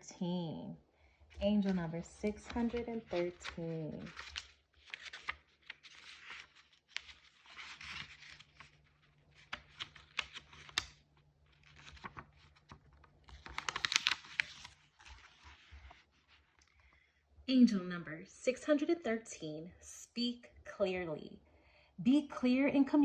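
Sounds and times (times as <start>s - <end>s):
cards shuffling: 1.6s - 16.8s.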